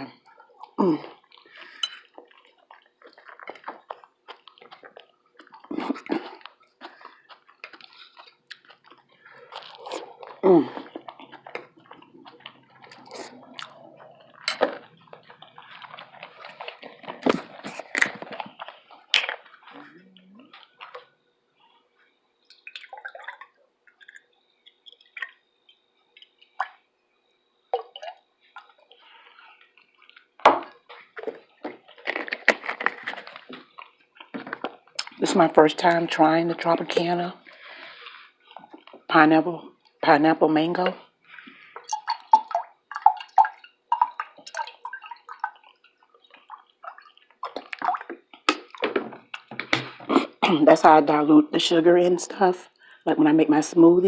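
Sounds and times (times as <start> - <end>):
wet chewing and mouth smacking: 0.0 - 21.2, 27.7 - 35.2, 37.0 - 39.1, 41.0 - 50.4.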